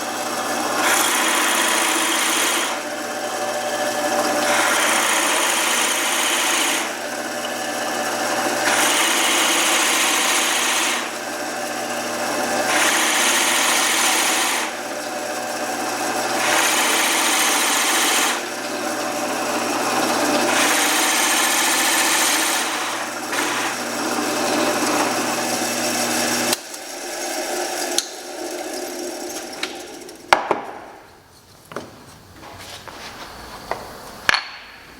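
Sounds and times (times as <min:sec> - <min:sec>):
woodworking power tool running: 0:00.0 - 0:31.1
sharp knocks of wood: 0:30.3 - 0:31.0.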